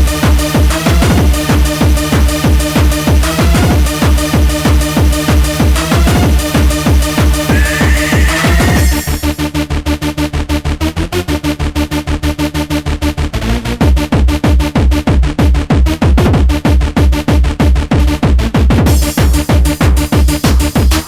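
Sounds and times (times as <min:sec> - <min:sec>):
fast hardcore rave music: 0:00.0 - 0:09.7, 0:12.3 - 0:21.0
booming kick drum: 0:13.9 - 0:21.0
hi-hats and cymbals: 0:18.9 - 0:21.0.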